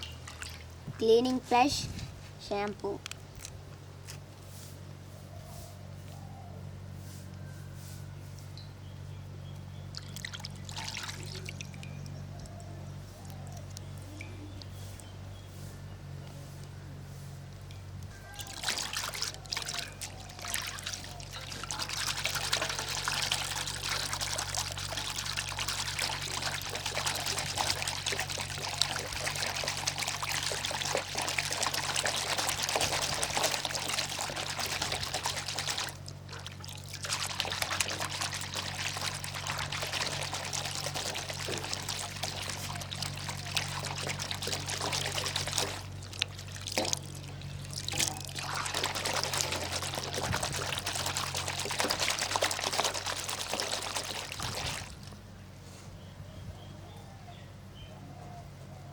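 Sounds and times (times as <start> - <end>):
water pouring into soapy water: 18.4 - 55.0.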